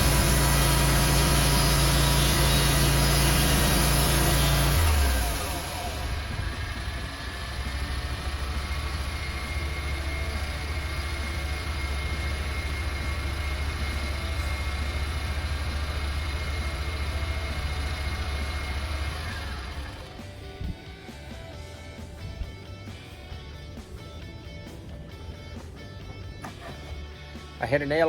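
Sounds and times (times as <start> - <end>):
band sawmill engine hum: 0.0 - 28.0.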